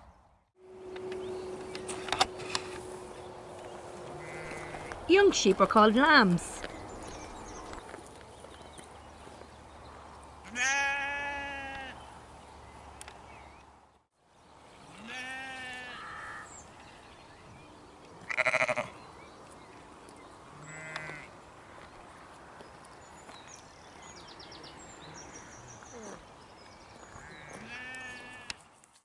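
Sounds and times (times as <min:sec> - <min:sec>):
sheep bleating: 0:04.2 - 0:05.0, 0:10.4 - 0:12.0, 0:15.0 - 0:16.4, 0:18.2 - 0:19.0, 0:20.6 - 0:21.3, 0:27.2 - 0:28.6.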